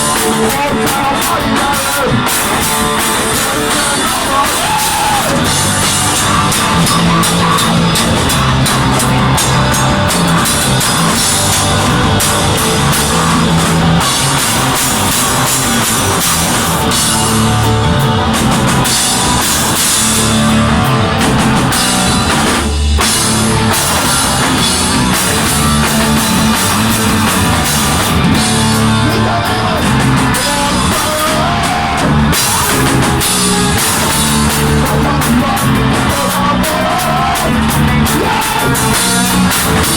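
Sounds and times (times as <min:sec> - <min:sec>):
rock band with drum kit: 0:00.0 - 0:39.9.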